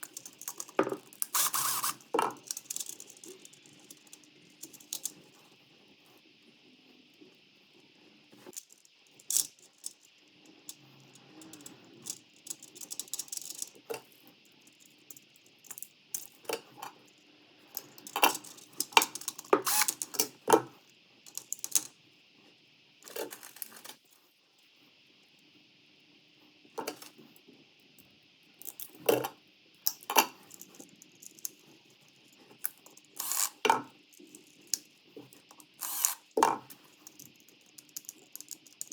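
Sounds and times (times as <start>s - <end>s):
hard objects clicking and clinking: 0.0s - 5.1s, 32.6s - 38.9s.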